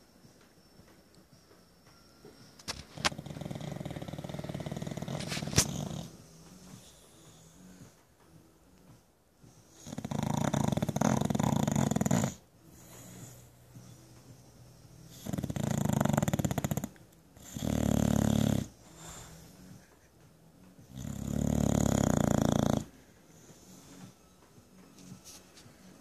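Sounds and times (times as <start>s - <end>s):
dog snoring: 2.8s - 8.0s, 9.4s - 19.8s, 20.8s - 24.3s
dog breathing: 2.9s - 8.1s, 9.4s - 19.8s, 20.8s - 24.3s.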